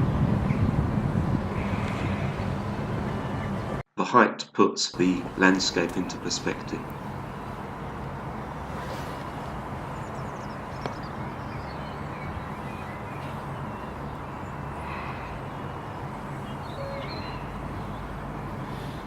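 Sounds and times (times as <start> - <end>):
low outdoor rumble: 0.0 - 3.8, 5.0 - 19.0
bird chirps: 9.9 - 18.2.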